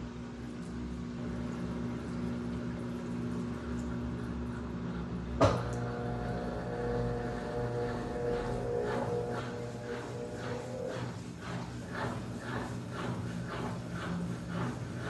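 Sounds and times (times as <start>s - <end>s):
washing machine motor hum: 0.0s - 15.0s.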